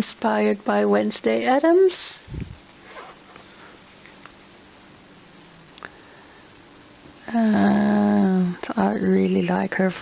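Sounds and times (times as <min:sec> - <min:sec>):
steady background hiss: 0:00.0 - 0:10.0.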